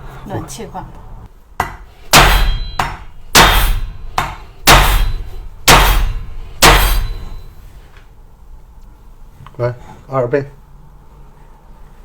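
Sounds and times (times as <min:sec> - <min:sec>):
cleaver striking metal pipe: 0:01.6 - 0:07.6.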